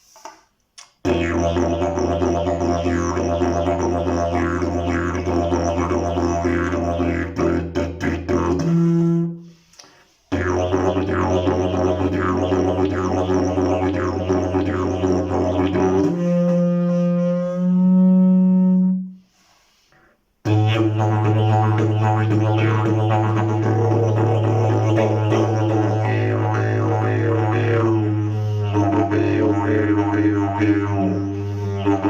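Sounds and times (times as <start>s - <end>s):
didgeridoo drone: 1.0s - 9.3s, 10.3s - 18.9s, 20.5s - 32.0s
short breath: 9.4s - 10.3s, 19.2s - 20.3s, 31.3s - 31.8s.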